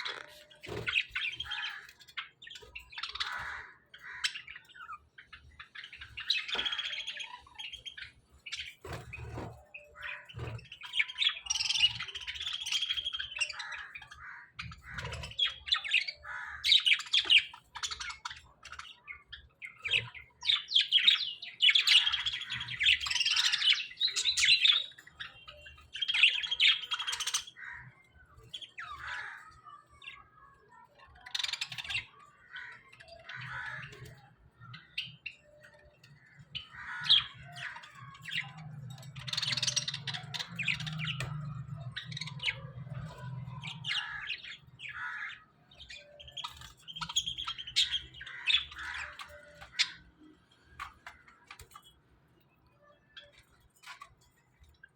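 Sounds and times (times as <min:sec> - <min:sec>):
budgerigars chirping: 0:00.0 - 0:27.9, 0:36.2 - 0:50.0.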